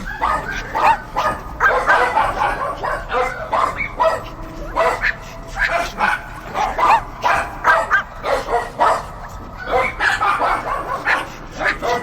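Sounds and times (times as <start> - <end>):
dogs barking: 0.0 - 12.0.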